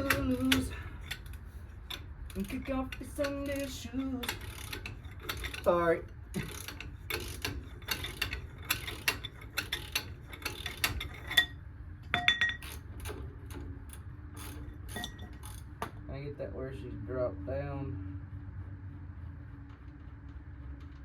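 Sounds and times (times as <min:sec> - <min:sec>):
socket ratchet clicking: 0:00.0 - 0:11.5
metallic clinks: 0:00.0 - 0:12.8, 0:14.9 - 0:15.6.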